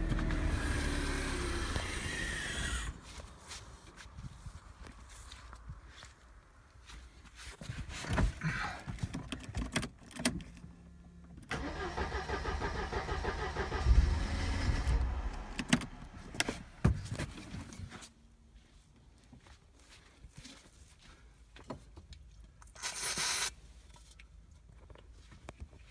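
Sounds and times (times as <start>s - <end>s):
car engine cranking on starter: 0.0s - 3.2s, 11.5s - 17.0s.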